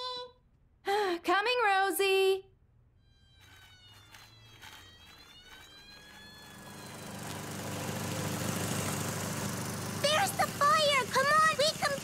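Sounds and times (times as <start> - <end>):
lawnmower engine running: 4.6 - 12.0.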